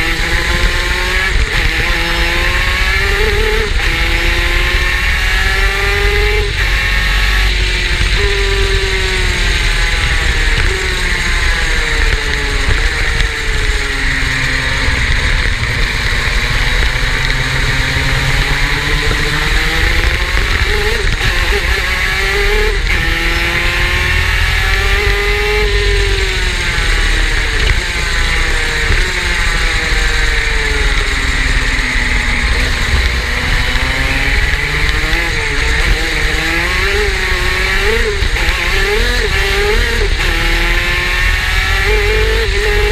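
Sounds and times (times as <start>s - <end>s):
two-stroke kart engine revving: 0.0s - 42.9s.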